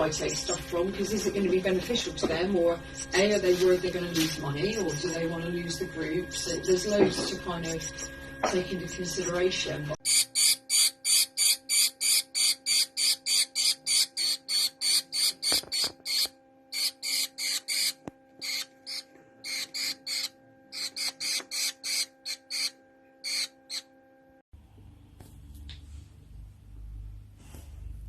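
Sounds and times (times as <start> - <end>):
steady low hum: 0.0 - 28.0
finch chirping: 10.1 - 23.8.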